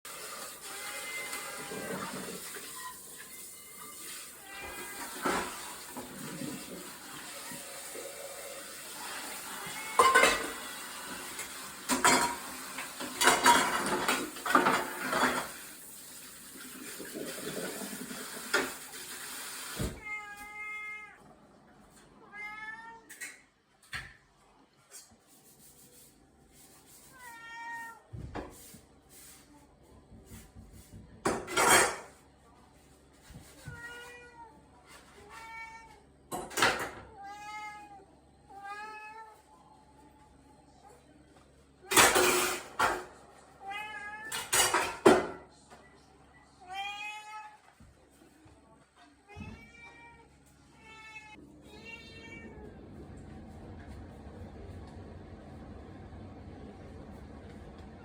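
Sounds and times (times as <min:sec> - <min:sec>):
dishes clattering: 0:09.8 - 0:10.8, 0:11.4 - 0:15.6, 0:31.2 - 0:32.2, 0:41.9 - 0:43.1, 0:44.3 - 0:45.4
cat meowing: 0:20.0 - 0:21.2, 0:50.8 - 0:52.7.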